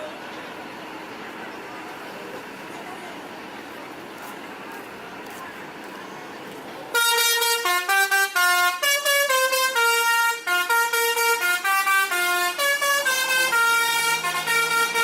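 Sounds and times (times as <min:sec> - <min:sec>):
multi-tone bus horn playing a tune: 0:06.9 - 0:15.0.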